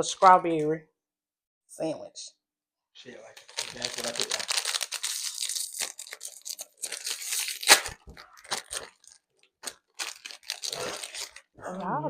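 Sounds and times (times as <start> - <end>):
plastic wrapper crinkling: 3.4 - 11.6
wrapper ripping: 3.4 - 11.6.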